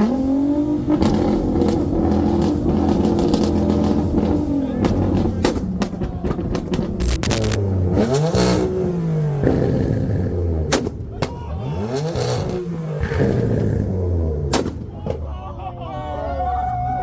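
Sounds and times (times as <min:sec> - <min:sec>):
car engine revving: 0:00.0 - 0:11.1, 0:11.8 - 0:14.9
exhaust pops and bangs: 0:00.8 - 0:10.0, 0:10.6 - 0:11.5, 0:12.2 - 0:15.3.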